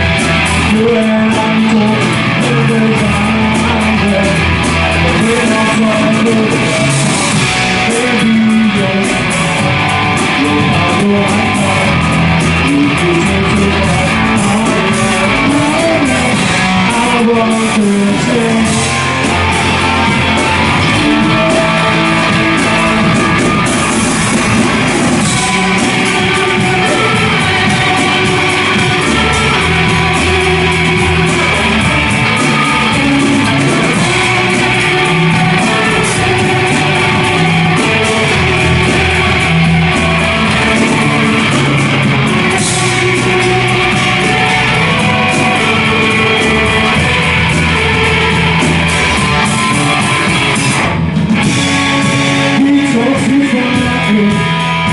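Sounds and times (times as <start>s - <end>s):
drum kit: 0.0s - 54.9s
guitar: 0.0s - 54.9s.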